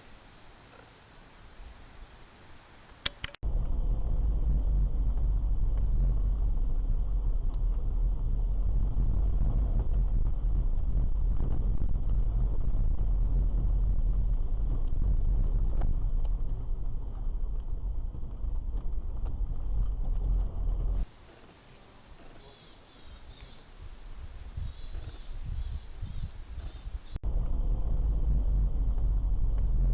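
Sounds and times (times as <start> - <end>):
birds chirping: 0.0 - 3.4, 21.0 - 27.2
low outdoor rumble: 0.0 - 29.9.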